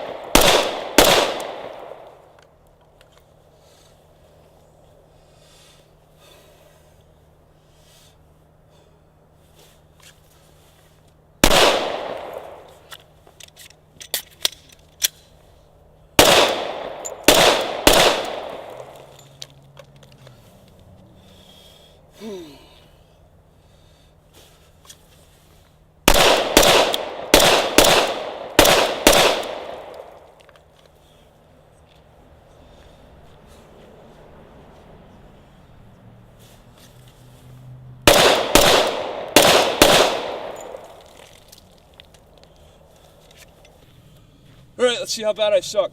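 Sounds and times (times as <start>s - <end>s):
pistol shots with ringing tail: 0.0s - 2.3s, 11.4s - 12.7s, 16.2s - 19.1s, 26.1s - 30.3s, 38.1s - 41.2s.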